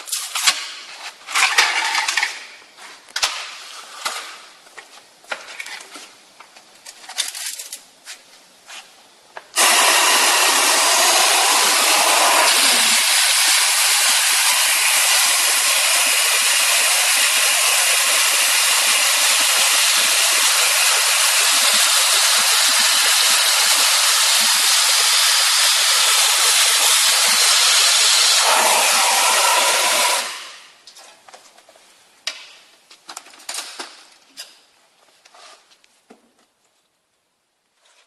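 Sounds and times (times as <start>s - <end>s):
vacuum cleaner air hissing: 9.6s - 30.7s.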